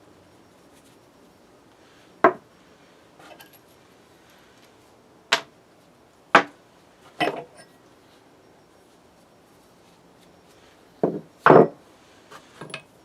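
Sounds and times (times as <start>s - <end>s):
faint rustle: 0.0s - 13.0s
metal parts clunking: 3.2s - 3.7s, 7.2s - 7.8s.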